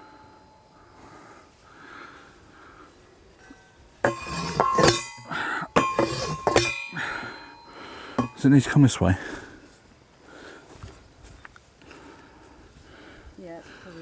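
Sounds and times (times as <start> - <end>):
post driver metallic clangs: 3.3 - 9.4.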